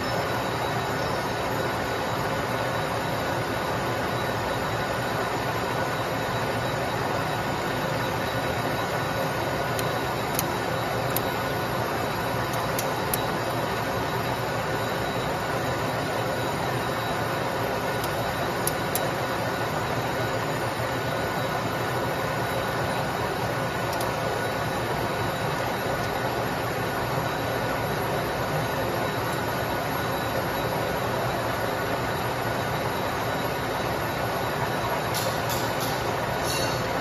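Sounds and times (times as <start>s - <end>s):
sharp ticks: 9.7s - 11.4s, 12.5s - 13.3s.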